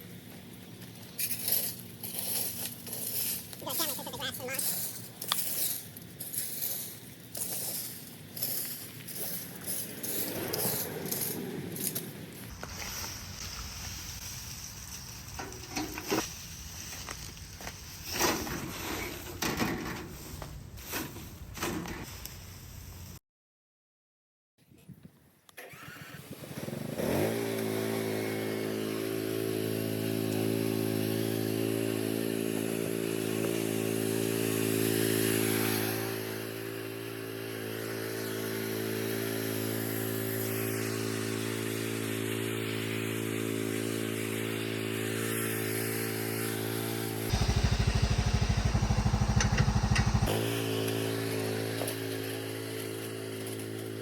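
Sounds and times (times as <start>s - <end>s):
chainsaw starting and running: 25.6s - 54.0s.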